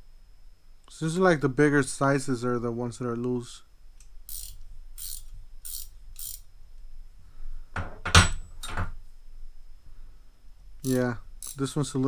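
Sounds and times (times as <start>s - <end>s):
ratcheting wrench clicking: 4.3s - 6.5s, 10.8s - 11.8s.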